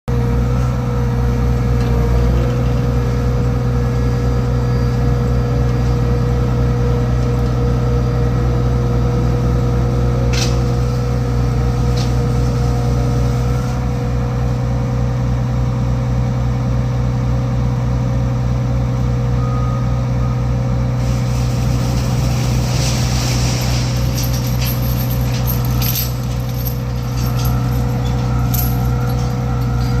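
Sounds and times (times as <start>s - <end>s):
heavy machinery engine droning: 0.1s - 30.0s
metal clanks and rattles: 21.4s - 30.0s.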